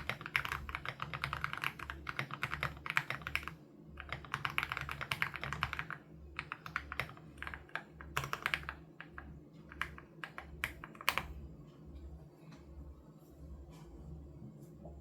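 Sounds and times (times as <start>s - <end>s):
typing on mechanical keyboard: 0.0s - 11.4s.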